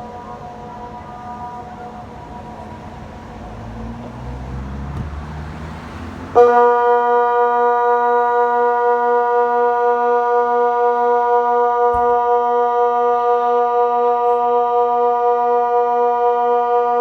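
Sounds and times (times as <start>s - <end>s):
distant echoing siren: 0.0s - 17.0s
low steady siren tone: 0.0s - 17.0s
brief low thump: 3.9s - 5.8s.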